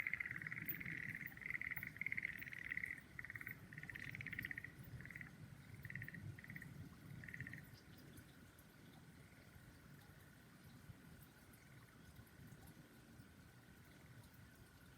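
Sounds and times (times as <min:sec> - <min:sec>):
frogs trilling: 0:00.0 - 0:07.7.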